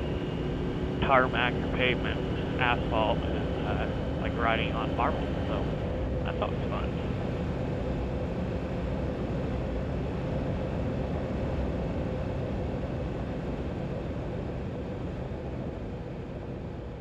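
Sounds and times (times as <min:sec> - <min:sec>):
faint hum: 0:00.0 - 0:17.0
motorcycle engine rumble: 0:01.0 - 0:05.1.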